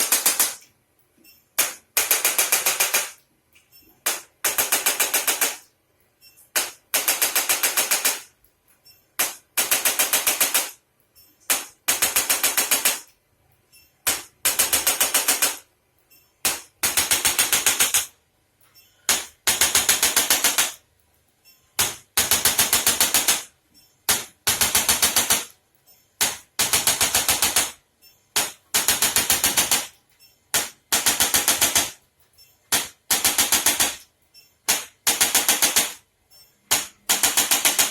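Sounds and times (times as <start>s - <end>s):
rapid mechanical tapping: 11.4s - 20.8s, 21.4s - 37.9s.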